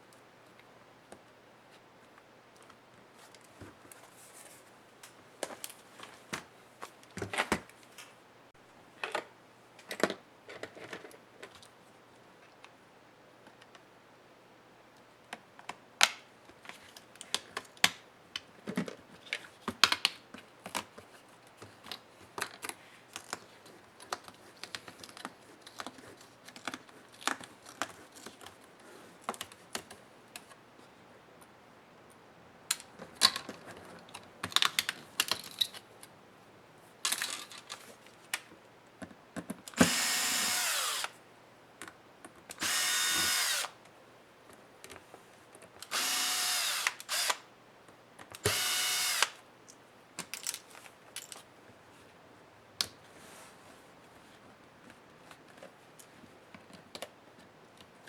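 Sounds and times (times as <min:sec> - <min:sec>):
electric screwdriver running: 0:39.8 - 0:41.2, 0:42.6 - 0:43.8, 0:45.9 - 0:47.4, 0:48.4 - 0:49.4.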